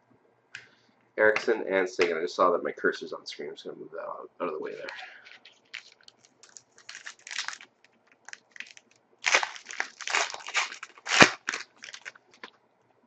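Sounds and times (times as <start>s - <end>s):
wrapper crinkling and tearing: 5.2s - 12.5s.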